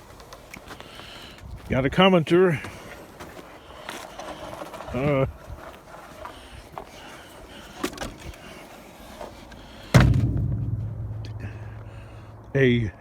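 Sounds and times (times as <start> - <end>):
loud ringing metal clang: 10.0 - 12.4.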